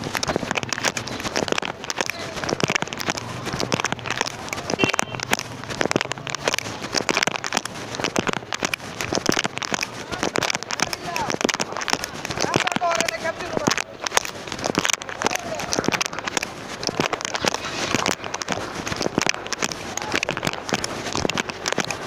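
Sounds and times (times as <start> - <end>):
dense irregular crackling and clicking: 0.0 - 22.0.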